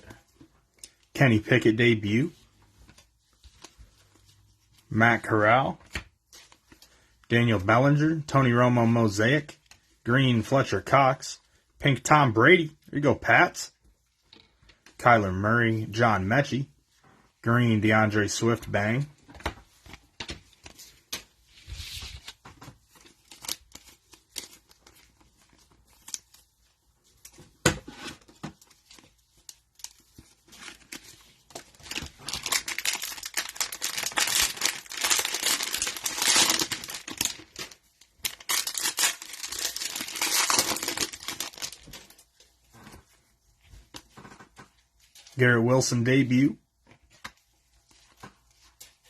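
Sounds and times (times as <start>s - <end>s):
cellophane crinkling: 28.6s - 42.6s.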